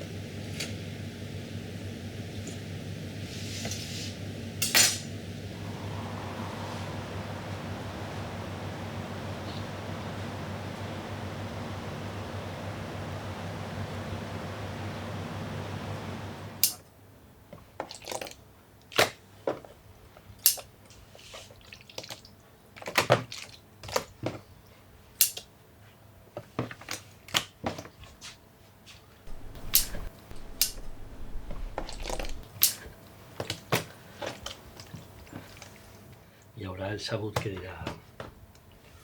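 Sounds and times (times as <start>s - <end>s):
low rumble: 5.4s - 9.4s, 29.3s - 32.4s
steady rushing noise: 5.4s - 9.4s, 29.3s - 32.4s
sharp clicks and knocks: 29.3s - 32.5s.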